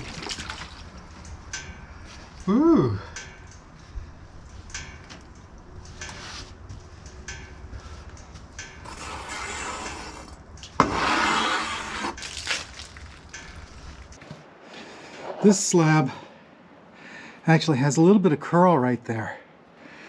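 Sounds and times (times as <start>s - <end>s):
low steady hum: 0.0s - 20.0s
sudden scraping noise: 8.8s - 12.2s.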